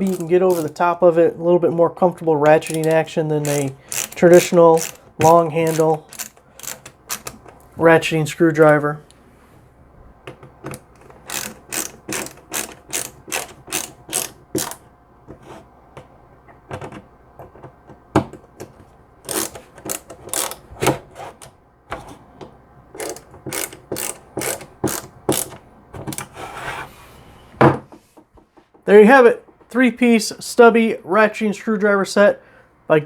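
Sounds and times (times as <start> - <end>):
ratcheting screwdriver clicking: 0.0 - 0.8, 2.4 - 7.6, 10.7 - 14.8, 19.3 - 20.6, 23.0 - 26.3.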